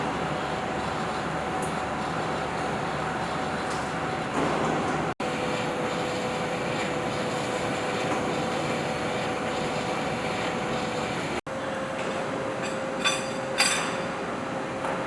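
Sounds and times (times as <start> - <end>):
steady machine whine: 0.0 - 11.5.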